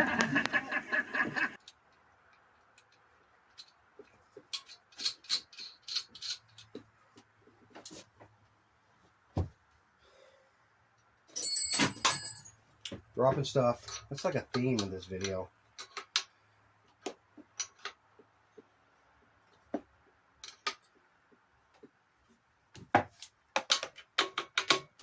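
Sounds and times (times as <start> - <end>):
metal tools clinking: 11.3 - 12.6, 13.8 - 16.0.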